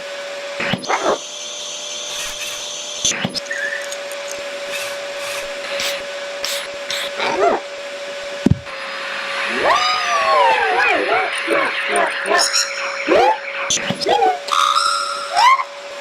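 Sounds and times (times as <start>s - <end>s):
vacuum cleaner running: 0.0s - 3.5s, 4.5s - 14.6s
rising and falling whine: 7.2s - 16.0s
sharp knocks: 8.4s - 8.7s.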